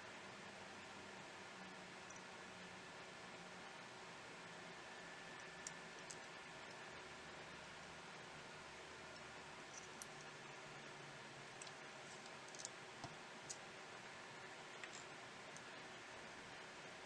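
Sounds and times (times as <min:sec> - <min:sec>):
steady hiss: 0:00.0 - 0:17.0
faint clicks of small parts: 0:05.3 - 0:06.9, 0:09.1 - 0:10.4, 0:11.5 - 0:13.6, 0:14.7 - 0:15.8.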